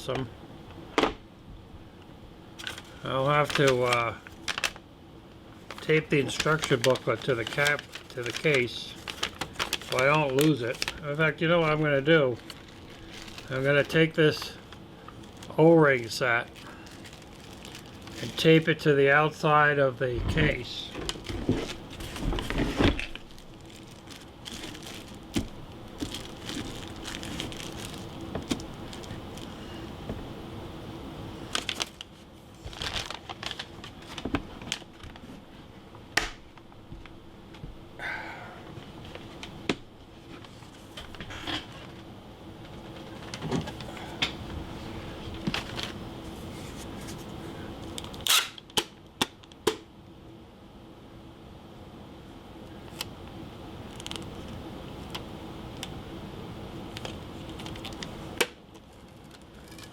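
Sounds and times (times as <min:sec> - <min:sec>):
plastic crackling and rustling: 0:02.6 - 0:04.8, 0:05.5 - 0:18.8, 0:20.4 - 0:29.7, 0:31.4 - 0:35.4, 0:45.2 - 0:48.8, 0:53.8 - 0:55.9, 0:56.9 - 0:59.9.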